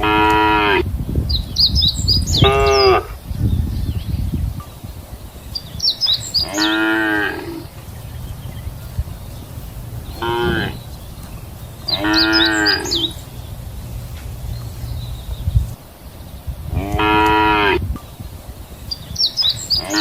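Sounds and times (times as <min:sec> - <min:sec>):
cattle mooing: 0:06.4 - 0:07.7, 0:10.2 - 0:10.9, 0:11.8 - 0:13.3, 0:16.8 - 0:17.8.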